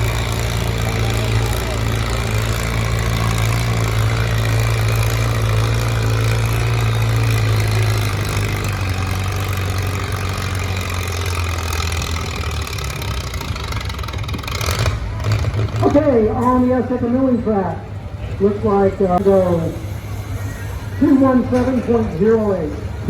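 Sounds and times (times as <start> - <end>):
tractor engine running: 0.0 - 23.0.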